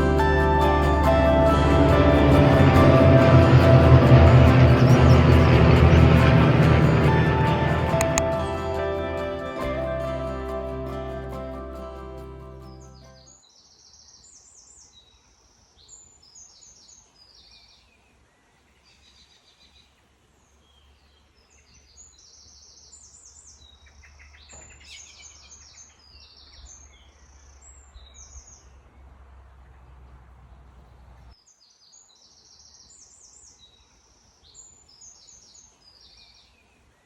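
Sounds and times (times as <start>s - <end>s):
low steady rumble: 0.0s - 12.9s
birds chirping and trilling: 20.5s - 31.1s.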